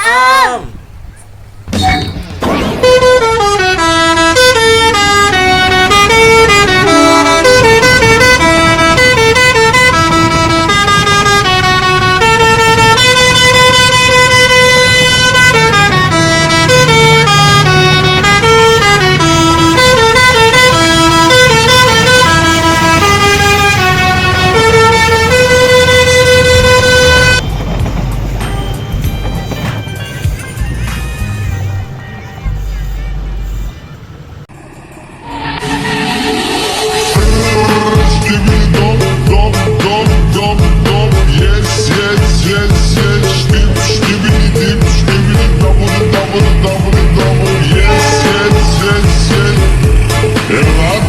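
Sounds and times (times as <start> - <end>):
musical horn playing a tune: 2.8 - 27.4, 36.6 - 38.9, 47.8 - 49.3
low rumble: 34.2 - 51.0.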